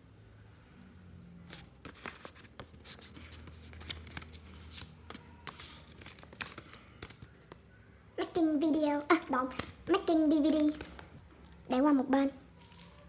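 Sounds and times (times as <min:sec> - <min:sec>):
packaging rustling: 0:01.9 - 0:07.5, 0:08.7 - 0:11.7, 0:12.5 - 0:13.0
faint clicks and taps: 0:08.8 - 0:11.7.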